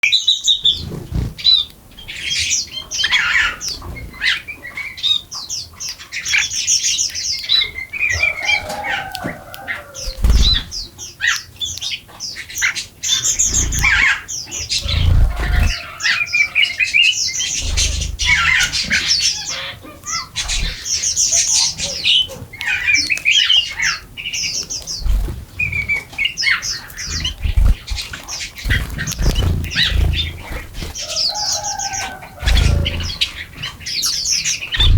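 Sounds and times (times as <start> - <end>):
small birds chirping and squawking: 0.0 - 34.9
low thuds: 27.1 - 31.0.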